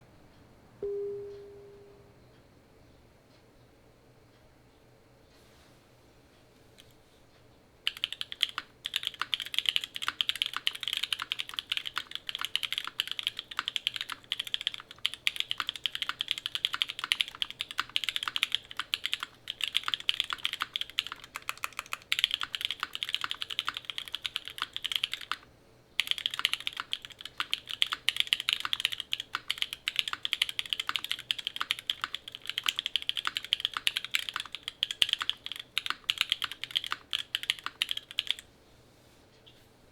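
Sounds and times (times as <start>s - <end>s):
mechanical keyboard typing: 7.9s - 38.4s.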